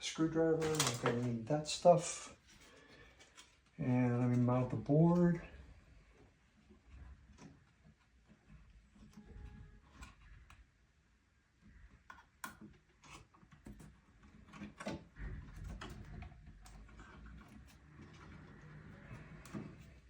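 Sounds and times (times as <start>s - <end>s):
light handling clicks and knocks: 0.4s - 1.4s.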